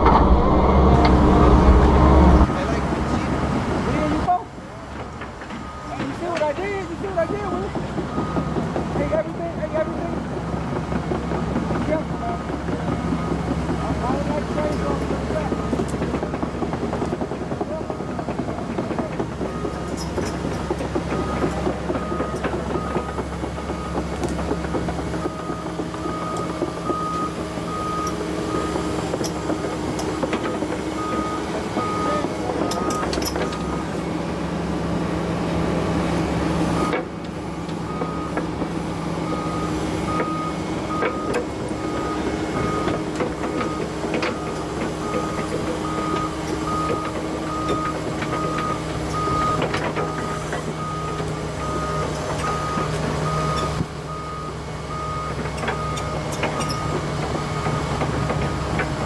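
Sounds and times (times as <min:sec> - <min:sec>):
excavator diesel engine running: 0:00.0 - 0:59.0
travel alarm beeping: 0:30.6 - 0:33.9, 0:39.0 - 0:58.7.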